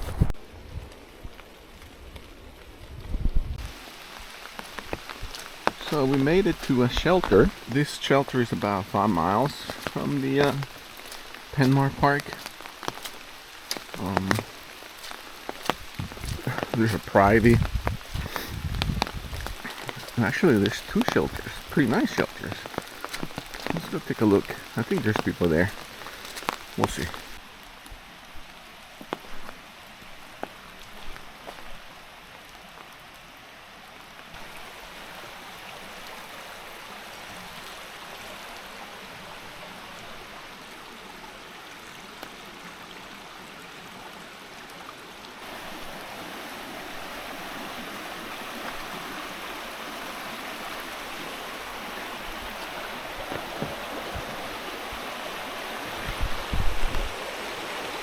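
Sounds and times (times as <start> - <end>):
stream water rushing: 3.5 - 58.0
low thumps: 15.7 - 20.0.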